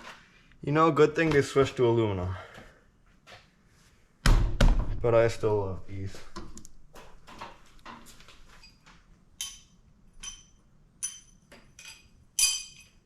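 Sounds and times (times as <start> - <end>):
metal parts clinking: 9.4 - 13.0.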